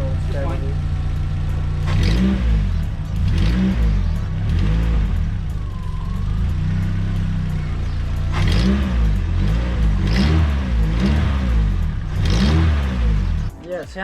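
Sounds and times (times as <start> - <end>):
odd turbo noise: 0.0 - 13.5
car engine idling and revving: 0.0 - 14.0.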